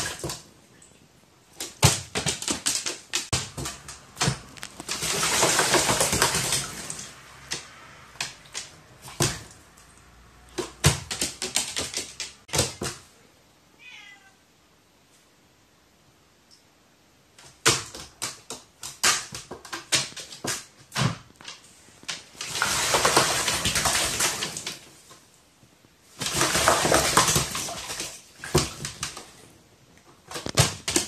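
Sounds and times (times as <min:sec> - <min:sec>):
cat meowing: 0:13.7 - 0:14.5.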